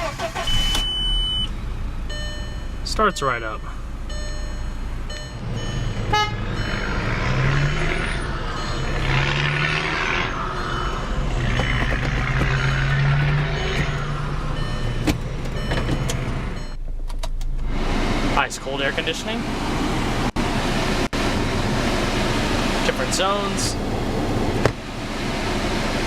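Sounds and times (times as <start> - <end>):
car engine revving: 0.0 - 26.0
short electronic beep: 0.5 - 1.5, 2.1 - 6.9, 8.6 - 9.0, 13.5 - 14.0.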